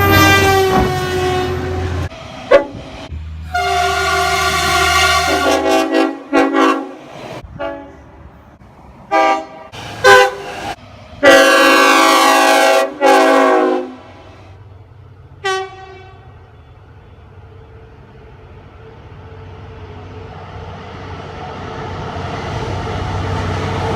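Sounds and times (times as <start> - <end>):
train horn blasts: 0.0 - 2.8, 3.5 - 8.0, 9.1 - 10.5, 11.2 - 14.3, 15.4 - 16.7
low train rumble: 0.0 - 23.9.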